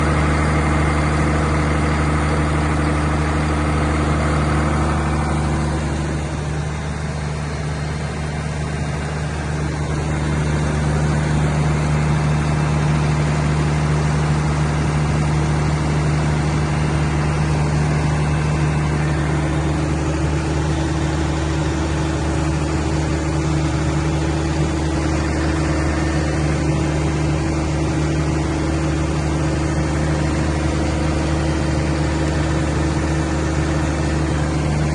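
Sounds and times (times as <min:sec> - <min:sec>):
diesel generator running: 0:00.0 - 0:34.9.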